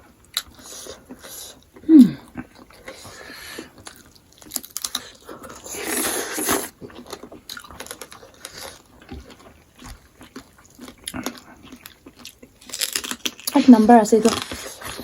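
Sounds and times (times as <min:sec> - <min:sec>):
chewing and lip smacks: 0:06.4 - 0:13.6.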